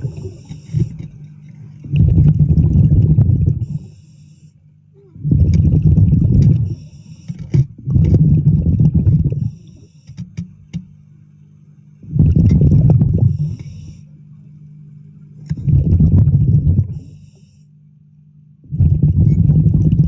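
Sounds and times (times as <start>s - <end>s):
exhaled air bubbling underwater: 0.0s - 17.5s, 18.5s - 20.0s
steady low hum: 0.0s - 20.0s.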